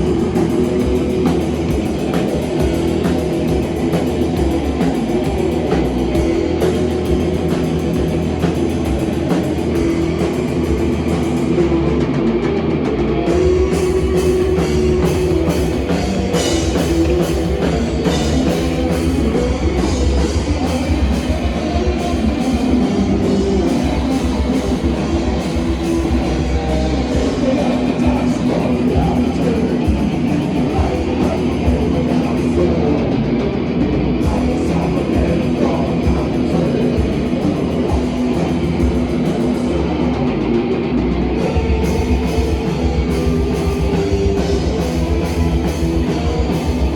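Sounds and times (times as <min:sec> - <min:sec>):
fast drum beats: 0:00.0 - 0:46.9
rock band playing: 0:00.0 - 0:46.9.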